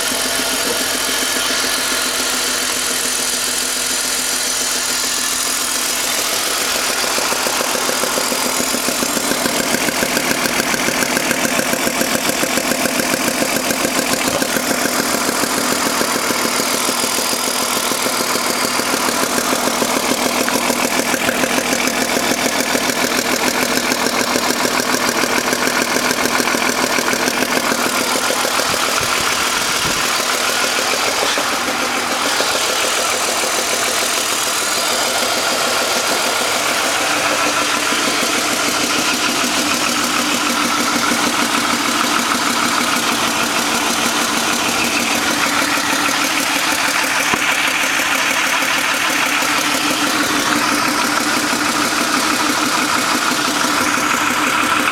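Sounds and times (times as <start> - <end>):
car engine running: 0.0 - 54.9
engine ticking knock: 0.0 - 54.9.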